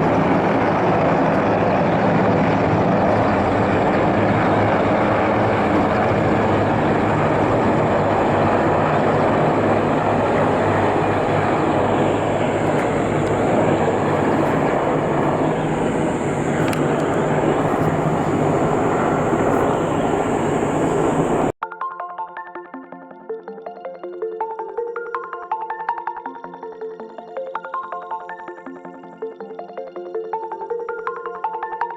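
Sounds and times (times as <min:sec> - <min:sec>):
helicopter rotor roar: 0:00.0 - 0:21.6.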